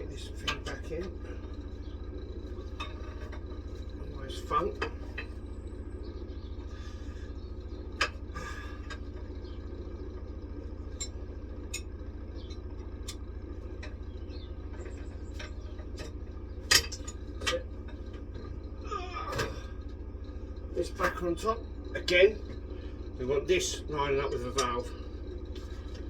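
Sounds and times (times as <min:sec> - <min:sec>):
steady low hum: 0:00.0 - 0:26.0
metal clinks and knocks: 0:02.3 - 0:04.0, 0:10.9 - 0:18.5.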